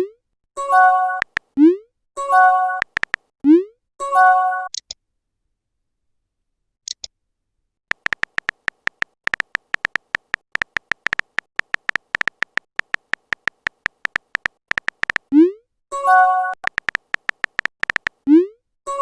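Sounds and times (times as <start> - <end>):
phone keyboard typing clicks: 1.1 - 1.6, 2.7 - 3.3, 7.9 - 15.3, 16.5 - 18.2
high pops: 1.2 - 1.6, 2.8 - 3.3, 7.9 - 15.3, 16.6 - 18.2.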